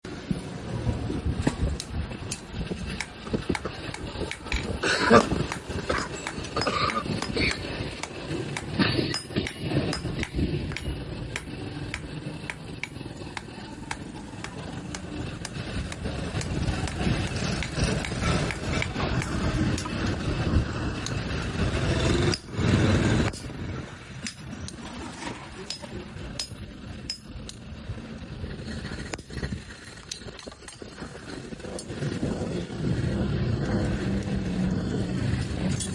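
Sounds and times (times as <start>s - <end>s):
low rumble: 0.0s - 35.9s.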